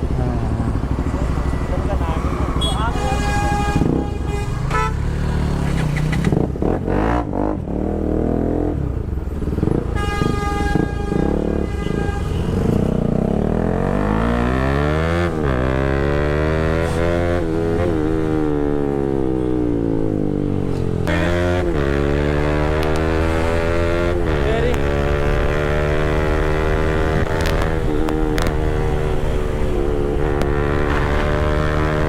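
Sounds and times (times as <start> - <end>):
motorcycle engine revving: 0.0 - 10.0, 10.7 - 32.0
vehicle horn honking: 2.6 - 5.2, 9.8 - 12.8.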